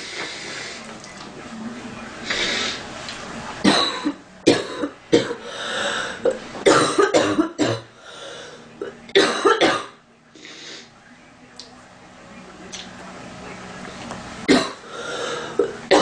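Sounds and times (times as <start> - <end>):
woman coughing: 3.7 - 5.4, 6.7 - 7.9, 9.2 - 10.0, 15.6 - 16.0.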